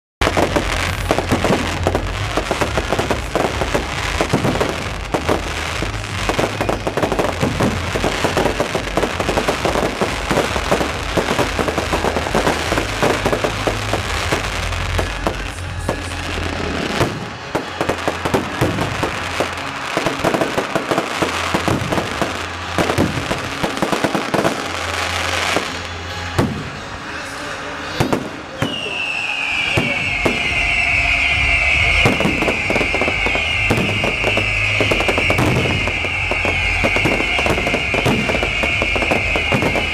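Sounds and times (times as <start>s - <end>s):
fireworks bangs and crackles: 0.2s - 39.9s.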